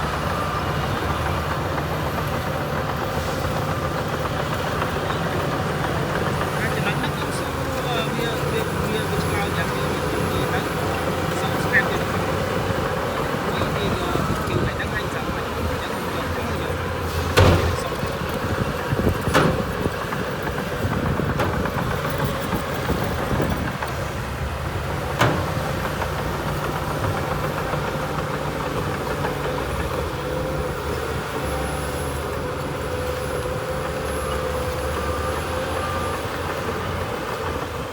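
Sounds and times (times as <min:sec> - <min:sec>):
diesel machinery engine running: 0:00.0 - 0:37.9
sharp knocks: 0:17.4 - 0:18.0, 0:19.3 - 0:19.8, 0:25.1 - 0:27.4.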